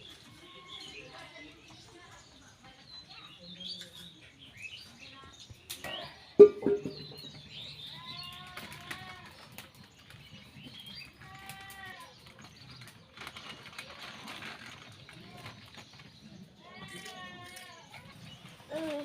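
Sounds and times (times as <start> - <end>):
bird chirps: 5.8 - 8.0
farmyard animal calls: 6.0 - 9.6, 10.8 - 12.3
sharp loud knock: 6.4 - 7.2.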